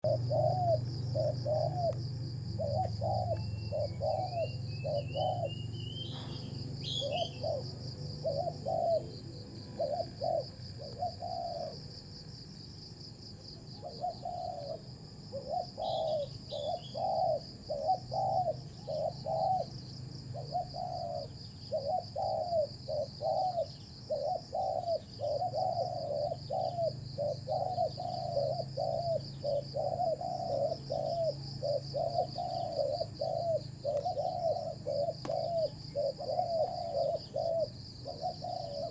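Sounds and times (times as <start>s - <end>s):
doves cooing: 0.0s - 12.2s, 13.4s - 38.9s
high insect drone: 0.0s - 38.9s
high bird chirps: 2.7s - 7.6s.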